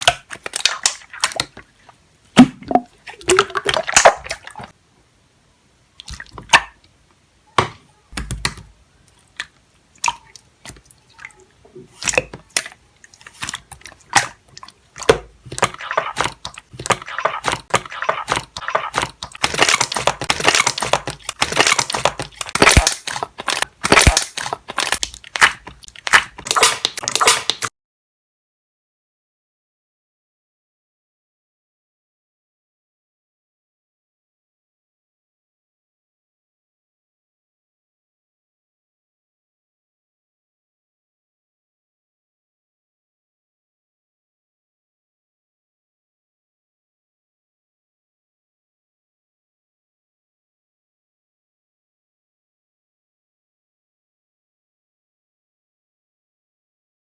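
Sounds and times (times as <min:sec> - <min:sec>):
crunching and squishing: 0:11.9 - 0:27.7.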